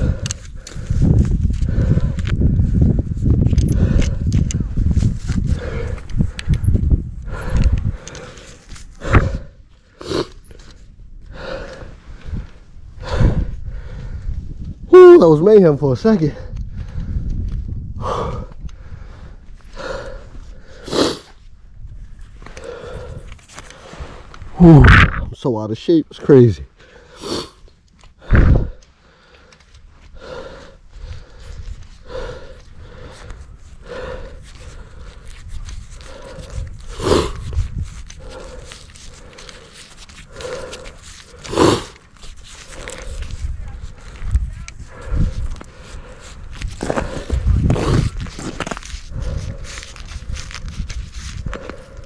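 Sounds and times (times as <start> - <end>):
person breathing heavily: 0.0 - 2.9, 3.6 - 14.4, 18.0 - 21.4, 22.4 - 24.2, 26.8 - 35.2, 36.0 - 42.0, 44.8 - 48.2, 49.1 - 50.4, 51.2 - 52.0.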